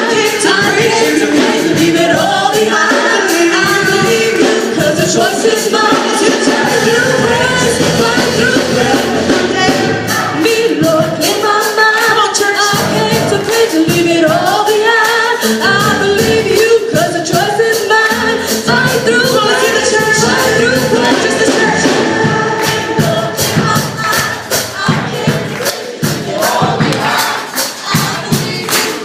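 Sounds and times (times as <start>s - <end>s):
drum beat: 0.0s - 29.0s
keyboard accompaniment: 0.0s - 29.0s
voices singing: 0.0s - 29.0s.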